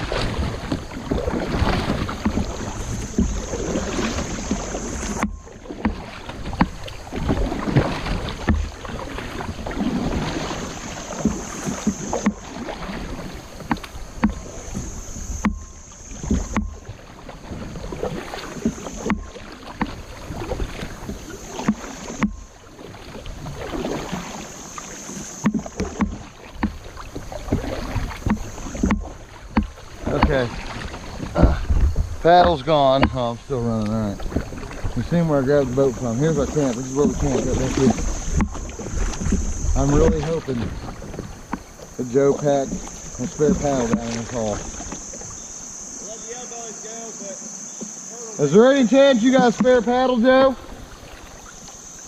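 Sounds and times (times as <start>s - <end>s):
paddle splashes: 0.0s - 52.0s
rushing water: 0.0s - 52.0s
wind rumble on microphone: 27.1s - 35.9s.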